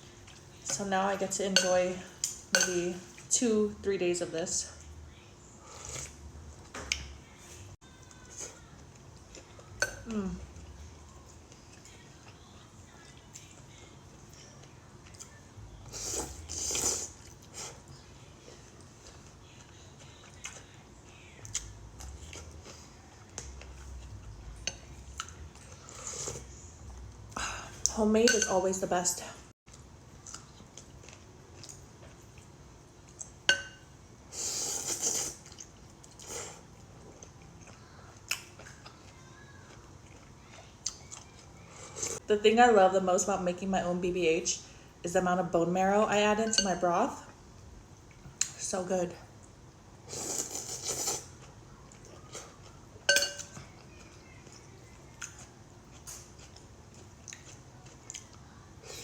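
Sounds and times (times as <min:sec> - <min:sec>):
utensils clinking against a bowl: 0:00.7 - 0:03.0, 0:28.2 - 0:28.8, 0:33.5 - 0:33.9, 0:53.0 - 0:53.8
person slurping soup: 0:16.0 - 0:17.8, 0:34.3 - 0:35.4, 0:50.1 - 0:51.3
utensil clinking against bowl: 0:28.2 - 0:28.6, 0:53.1 - 0:53.6
chewing: 0:29.7 - 0:33.4, 0:34.8 - 0:42.2, 0:53.6 - 0:59.0.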